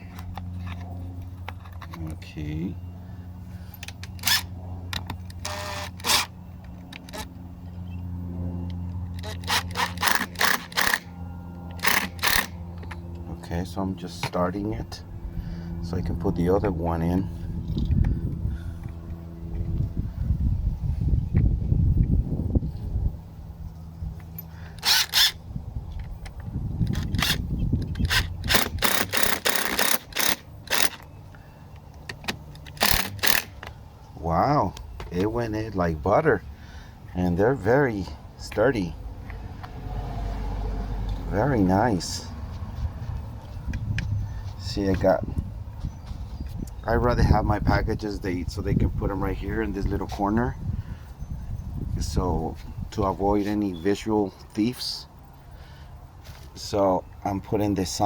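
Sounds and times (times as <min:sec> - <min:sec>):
steady low hum: 0:00.0 - 0:58.0
drill and screws clicking: 0:03.8 - 0:06.3, 0:09.2 - 0:11.0, 0:11.8 - 0:12.5, 0:24.8 - 0:25.4, 0:26.9 - 0:31.1, 0:32.1 - 0:33.7
screw biting into concrete: 0:28.0 - 0:31.0, 0:32.7 - 0:33.5.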